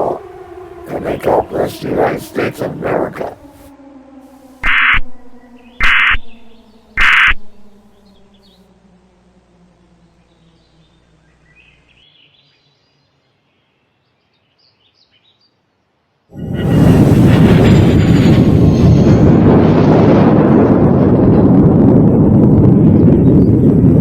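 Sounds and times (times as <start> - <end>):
low droning tone: 3.8 - 12.0
harsh digital warble data tones: 4.6 - 5.0, 5.8 - 7.4
faint bird-like chirps: 4.6 - 8.6.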